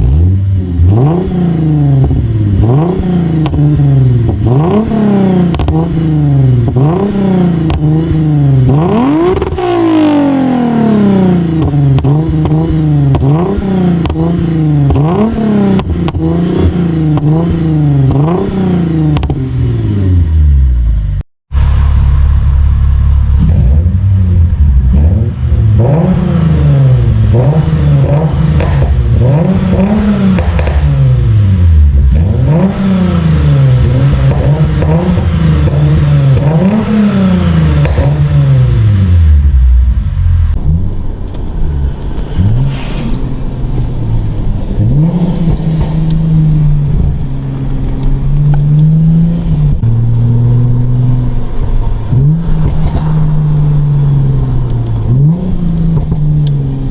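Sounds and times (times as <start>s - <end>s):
car engine revving: 0.0s - 56.9s
exhaust pops and crackles: 2.0s - 6.0s, 6.6s - 9.7s, 11.5s - 18.5s, 27.3s - 31.2s, 37.7s - 38.4s, 40.5s - 56.9s.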